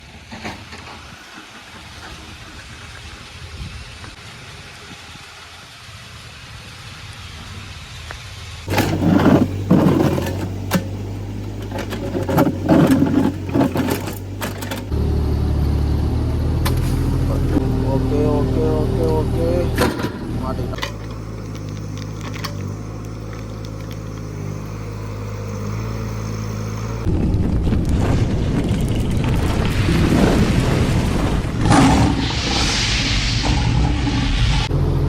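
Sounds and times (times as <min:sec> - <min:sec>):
metal clanking and scraping: 0:08.7 - 0:14.9, 0:19.7 - 0:24.0
diesel engine running: 0:08.7 - 0:27.3, 0:34.5 - 0:35.0.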